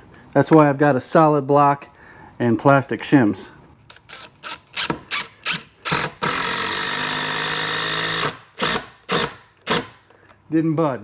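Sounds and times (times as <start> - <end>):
power drill driving screw: 3.9 - 10.0.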